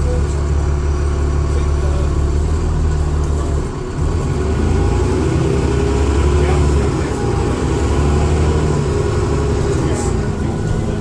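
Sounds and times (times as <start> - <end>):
bus diesel engine running: 0.0 - 11.0.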